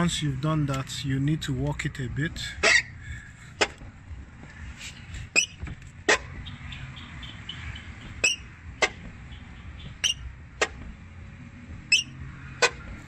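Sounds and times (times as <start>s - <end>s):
car door hinge squeak: 2.5s - 3.8s, 5.2s - 10.9s, 11.8s - 13.0s
car door click: 8.0s - 11.0s.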